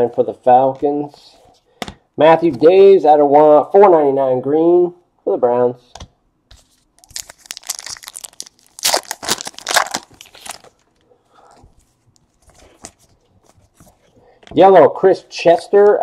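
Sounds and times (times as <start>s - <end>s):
foil wrapper tearing and crinkling: 7.0s - 10.8s.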